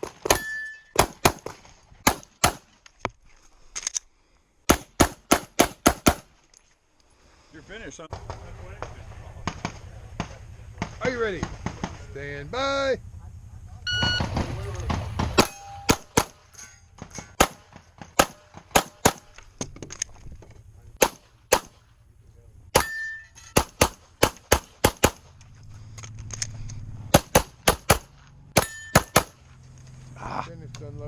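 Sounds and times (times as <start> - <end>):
bullets ringing steel targets: 0.0 - 1.5, 15.4 - 19.4, 22.8 - 25.2, 28.6 - 29.4
pistol shots: 0.0 - 2.7, 4.7 - 6.3, 14.2 - 16.4, 17.4 - 19.4, 21.0 - 21.9, 22.8 - 25.3, 27.1 - 29.4.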